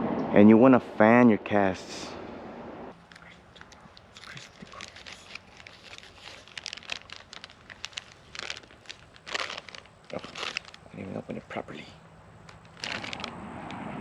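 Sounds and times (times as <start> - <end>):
plastic packaging crinkling and tearing: 3.6 - 11.4, 12.5 - 13.4.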